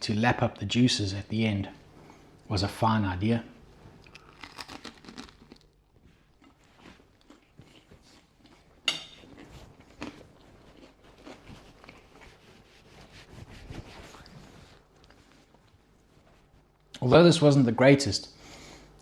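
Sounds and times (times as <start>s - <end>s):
chewing: 4.0s - 12.4s.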